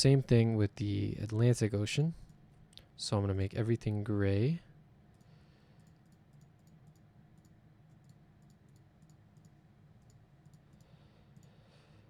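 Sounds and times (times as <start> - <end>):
low room hum: 0.0 - 12.0
computer mouse clicks: 5.1 - 11.6.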